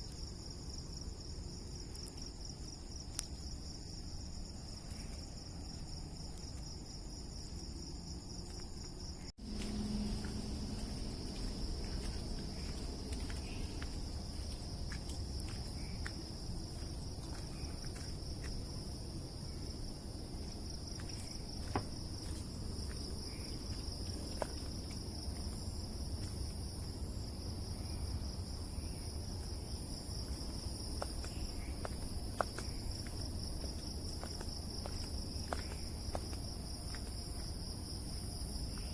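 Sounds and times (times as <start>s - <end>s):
crickets trilling: 0.0s - 38.9s
low rumble: 9.4s - 15.3s.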